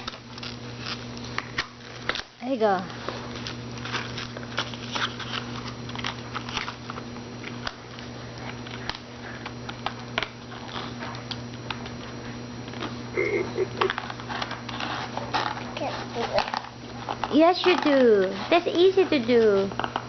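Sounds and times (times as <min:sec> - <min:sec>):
plastic packaging crinkling: 0:00.0 - 0:12.0
steady low hum: 0:00.0 - 0:20.0.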